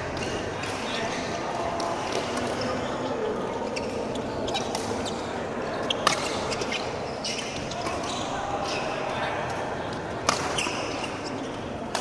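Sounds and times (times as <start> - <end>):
racket hitting shuttlecock: 10.2 - 11.1.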